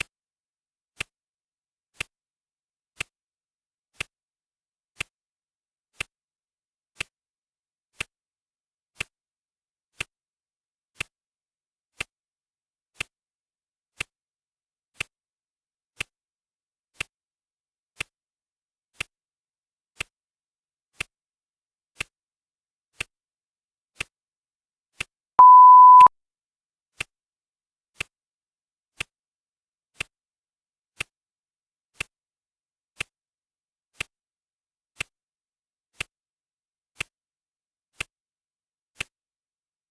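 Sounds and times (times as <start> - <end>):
electronic timer beep: 25.4 - 26.1.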